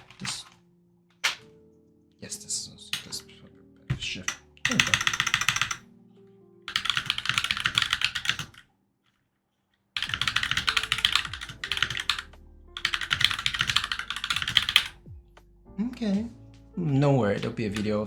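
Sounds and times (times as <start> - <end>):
mechanical keyboard typing: 3.9 - 5.8, 6.7 - 8.6, 10.0 - 15.0, 17.4 - 18.0.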